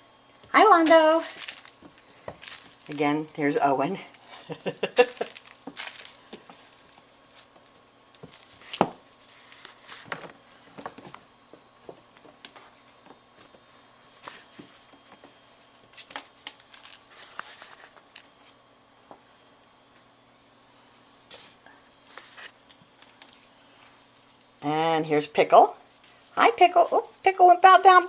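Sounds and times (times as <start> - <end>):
kitten paws pattering and scratching: 0.8 - 3.1.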